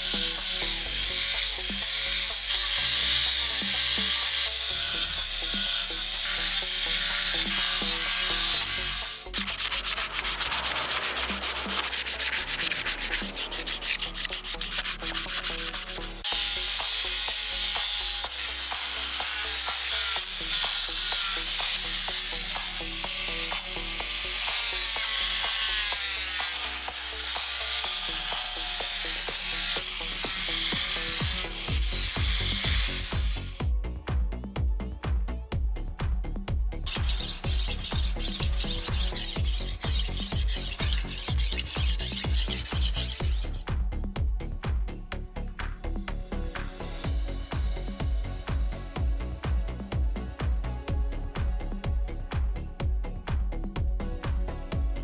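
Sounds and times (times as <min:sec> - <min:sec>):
hand sanding or filing: 0:00.0 - 0:33.7, 0:36.8 - 0:43.8
background music: 0:00.0 - 0:55.0.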